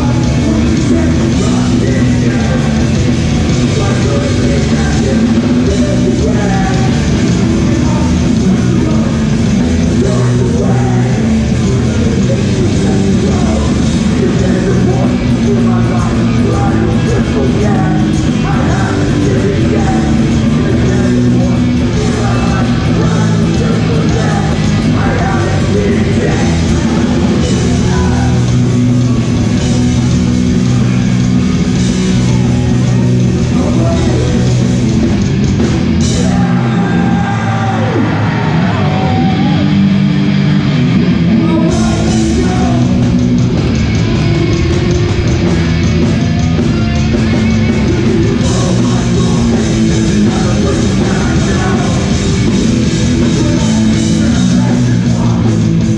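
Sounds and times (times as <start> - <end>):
punk band playing live: 0.0 - 55.9
shouted vocals: 35.8 - 45.6, 46.2 - 55.9.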